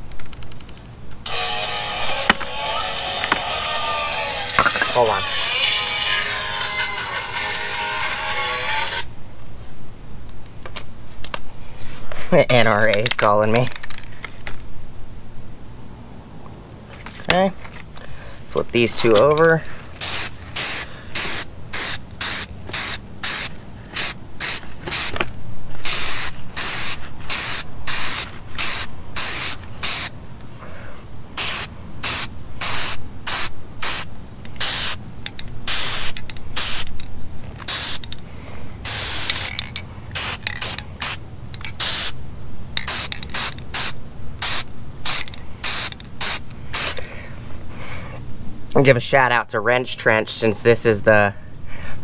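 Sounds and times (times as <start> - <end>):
spray-paint can hissing: 20.0 - 25.2, 25.8 - 30.1, 31.4 - 35.0, 35.6 - 36.9, 37.6 - 38.1, 38.8 - 42.2, 42.8 - 47.0.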